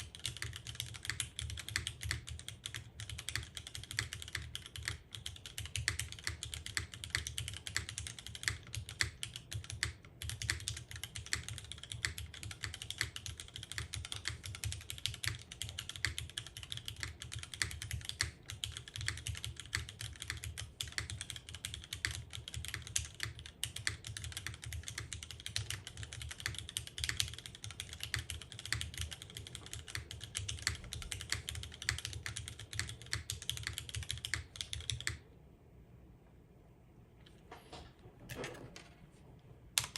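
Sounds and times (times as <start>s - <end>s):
mechanical keyboard typing: 0.0s - 35.3s.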